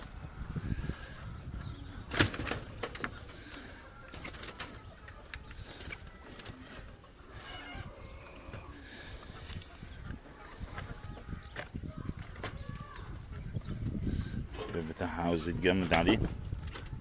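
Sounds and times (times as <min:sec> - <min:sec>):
birds calling: 0:00.0 - 0:17.0
wooden trap clicks and knocks: 0:02.1 - 0:03.4.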